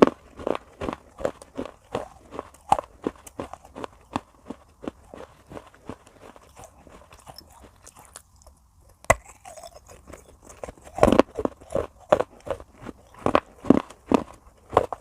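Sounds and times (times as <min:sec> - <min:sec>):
clay cracking under bite: 0:00.0 - 0:15.0
loud chewing crunches: 0:00.0 - 0:15.0.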